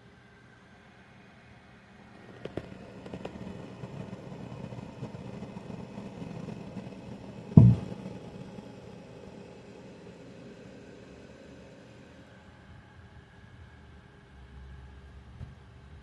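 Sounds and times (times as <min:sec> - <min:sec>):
low steady computer hum: 0:00.0 - 0:16.0
loud thump: 0:07.6 - 0:08.0.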